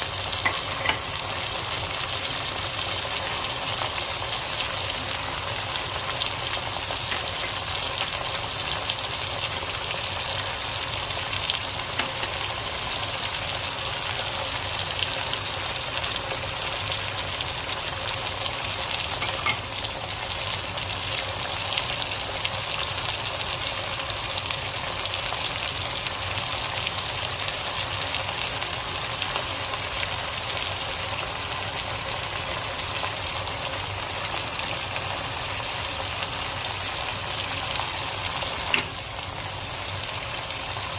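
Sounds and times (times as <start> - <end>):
food sizzling in hot oil: 0.0 - 40.9.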